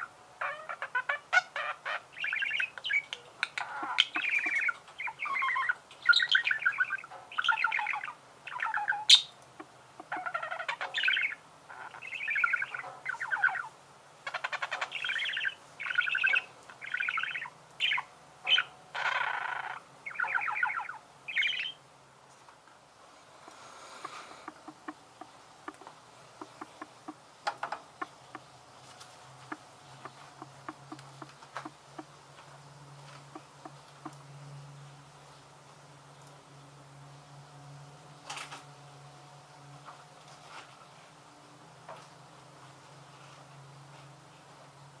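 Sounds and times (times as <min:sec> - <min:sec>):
budgerigars chirping: 0:00.4 - 0:21.8, 0:24.0 - 0:27.2, 0:28.0 - 0:28.5, 0:29.4 - 0:32.1.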